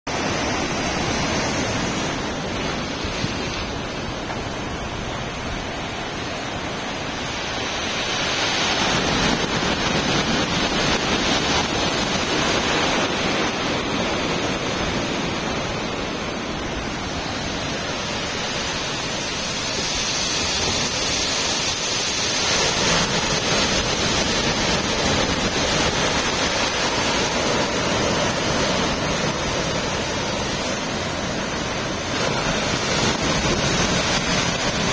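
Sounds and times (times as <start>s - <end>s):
waves breaking roar: 0.0s - 34.9s
wind buffeting microphone: 0.0s - 34.9s.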